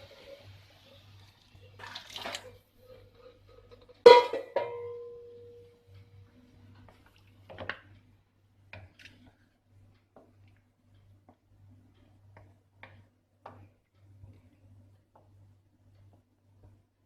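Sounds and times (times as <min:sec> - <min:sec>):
metal cookware clanking: 0:02.8 - 0:05.6.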